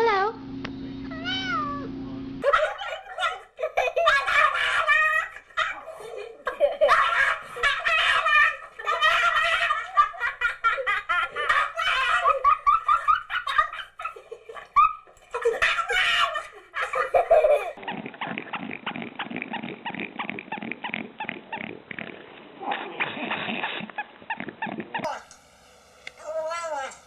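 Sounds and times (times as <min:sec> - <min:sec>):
high-pitched laughing: 0:02.4 - 0:18.6
rough noisy animal sound: 0:17.8 - 0:25.1.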